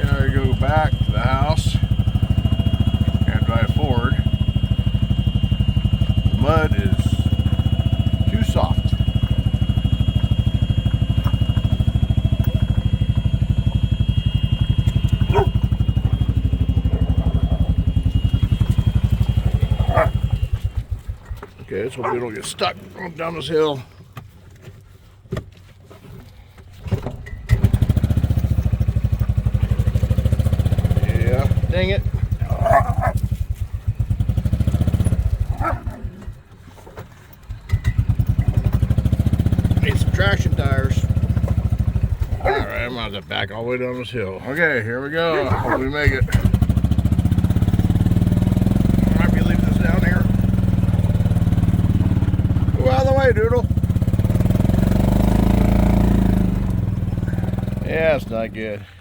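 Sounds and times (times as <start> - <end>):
golf cart engine running: 0.0 - 59.0.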